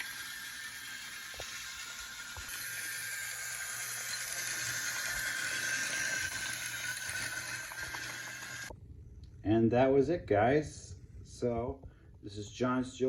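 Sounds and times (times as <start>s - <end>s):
toy train motor whining: 0.0s - 8.7s.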